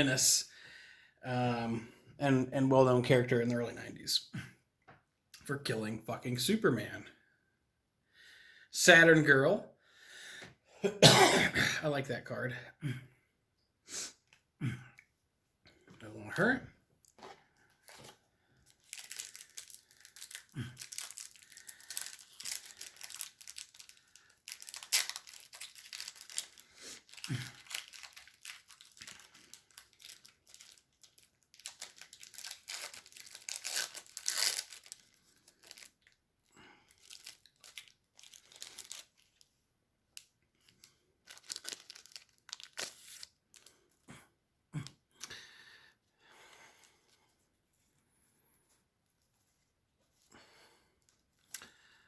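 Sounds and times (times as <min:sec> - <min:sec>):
wrappers tearing and crinkling: 0:17.8 - 0:36.2, 0:36.8 - 0:39.5, 0:40.7 - 0:43.8.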